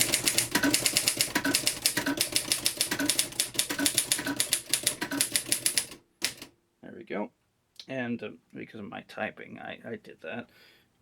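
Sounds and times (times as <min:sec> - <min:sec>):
manual typewriter keystrokes: 0:00.0 - 0:06.5.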